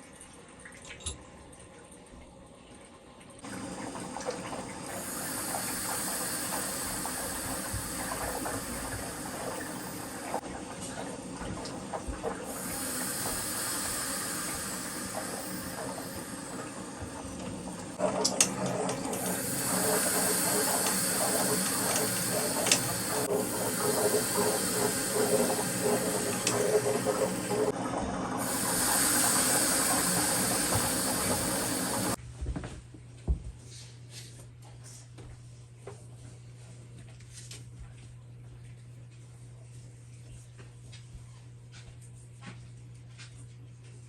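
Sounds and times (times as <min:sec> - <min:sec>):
water rushing into tank: 0:03.4 - 0:32.2.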